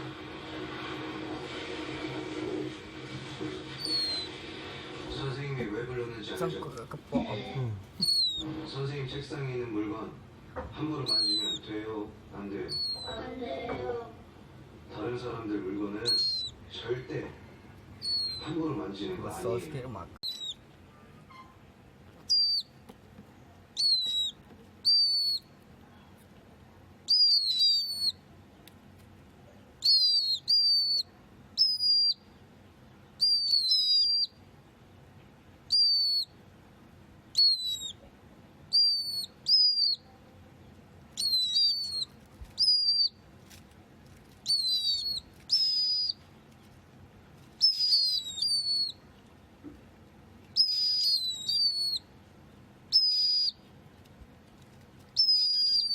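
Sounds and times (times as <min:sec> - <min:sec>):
bird whistled chirps: 0:03.7 - 0:04.4, 0:08.0 - 0:08.5, 0:11.0 - 0:11.7, 0:12.7 - 0:13.2, 0:16.0 - 0:16.6, 0:18.0 - 0:18.6, 0:20.2 - 0:20.6, 0:22.3 - 0:22.7, 0:23.8 - 0:25.5, 0:27.1 - 0:28.2, 0:29.8 - 0:32.2, 0:33.2 - 0:34.4, 0:35.7 - 0:36.4, 0:37.3 - 0:38.0, 0:38.7 - 0:40.0, 0:41.2 - 0:43.2, 0:44.4 - 0:46.2, 0:47.6 - 0:49.0, 0:50.5 - 0:52.1, 0:52.9 - 0:53.7, 0:55.1 - 0:55.9.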